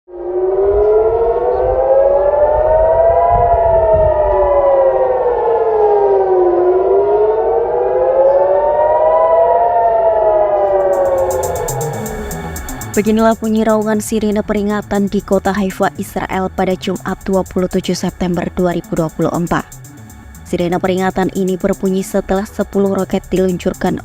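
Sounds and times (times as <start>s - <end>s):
warning sirens wailing: 0.1s - 24.0s
low rumble: 10.1s - 22.7s.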